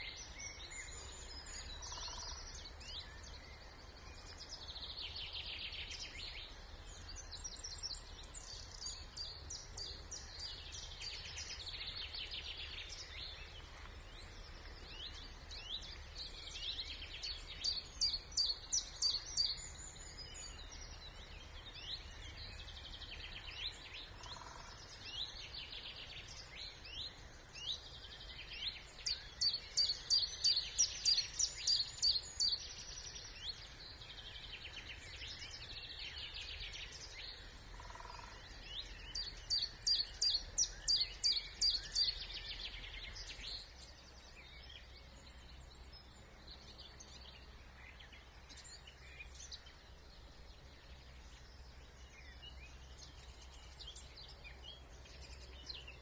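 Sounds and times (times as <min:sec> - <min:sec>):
faint low rumble: 0:00.0 - 0:31.1
songbirds chorus: 0:00.0 - 0:56.0.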